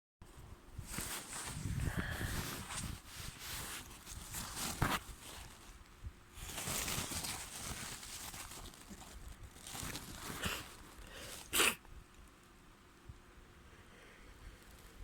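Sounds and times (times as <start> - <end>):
tissue crinkling: 0.9 - 11.8
person blowing nose: 10.3 - 11.8
person sneezing: 11.4 - 11.8.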